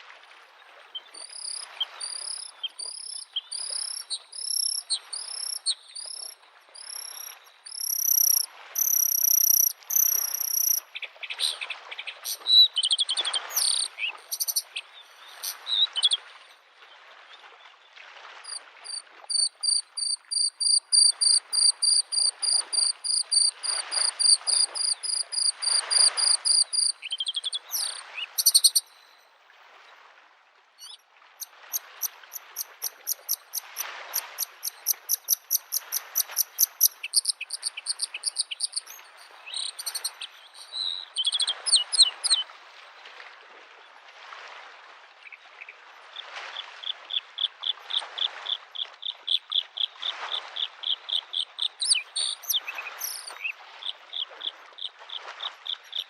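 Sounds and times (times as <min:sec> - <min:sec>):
lake waves lapping at shore: 0:00.0 - 0:56.0
bird singing: 0:01.0 - 0:11.7, 0:12.5 - 0:16.2, 0:18.5 - 0:29.2, 0:34.6 - 0:42.4, 0:51.4 - 0:53.6.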